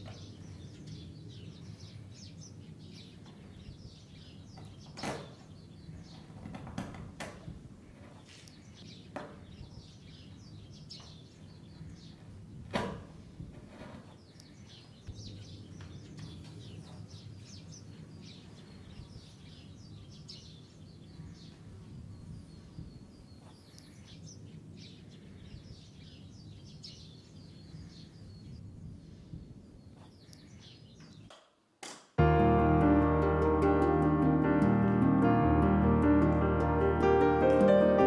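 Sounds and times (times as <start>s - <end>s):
small birds chirping: 0.0s - 31.6s
piano music: 32.2s - 38.0s.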